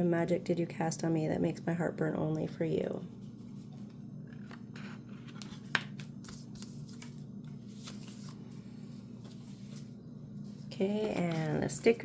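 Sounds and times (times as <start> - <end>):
low room hum: 0.0 - 12.0
paper cards rustling: 3.2 - 8.6, 10.5 - 12.0.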